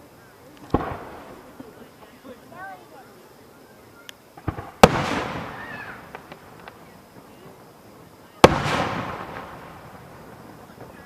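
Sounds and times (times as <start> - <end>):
small firework pops and crackles: 0.4 - 2.8, 4.0 - 11.0
firework shells bursting with echo: 0.6 - 2.2, 4.3 - 11.0.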